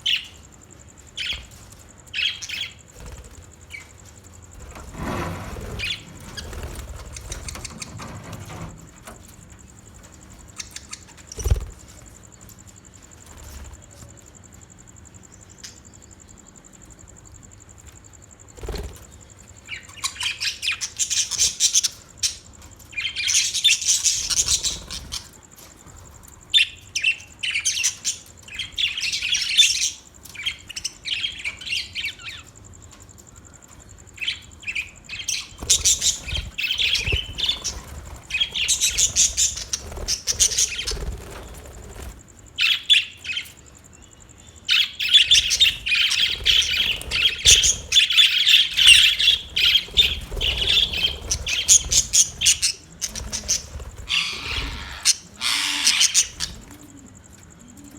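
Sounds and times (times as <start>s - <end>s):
budgerigars chirping and chattering: 10.5s - 11.7s, 19.6s - 25.3s, 34.2s - 43.6s, 44.7s - 56.7s.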